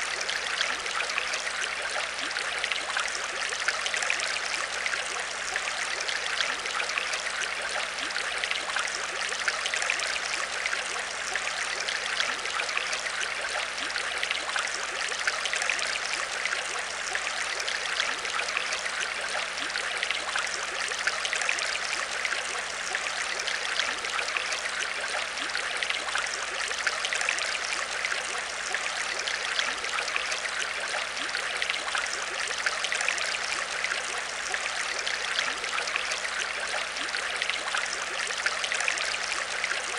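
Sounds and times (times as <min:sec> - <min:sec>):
aquarium water trickling and bubbling: 0:00.0 - 0:39.9.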